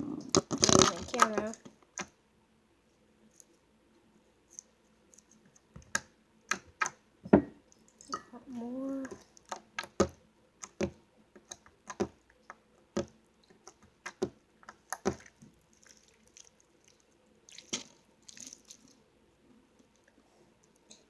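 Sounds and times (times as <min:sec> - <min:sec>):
slime kneaded by hand: 0:04.4 - 0:19.0.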